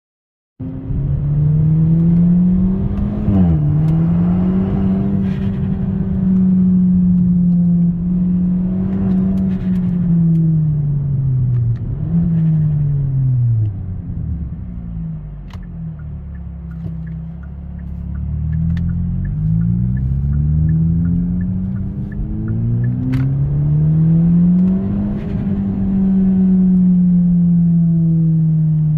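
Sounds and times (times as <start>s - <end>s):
light even ticking: 15.6s - 23.1s.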